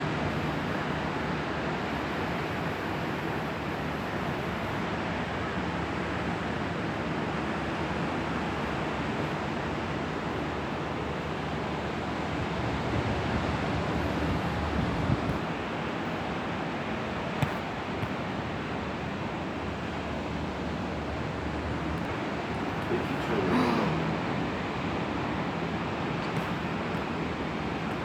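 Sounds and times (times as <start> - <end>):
wind on microphone: 12.5 - 15.5
ocean surf rushing: 19.8 - 28.0.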